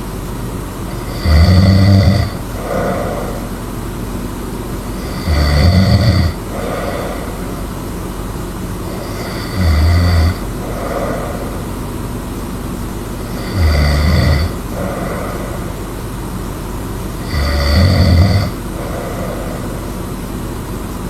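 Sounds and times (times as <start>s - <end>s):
steady background noise: 0.0s - 21.0s
soft breathing: 0.7s - 21.0s
person snoring: 0.9s - 3.9s, 4.8s - 8.0s, 8.8s - 12.2s, 13.2s - 16.4s, 17.2s - 20.4s.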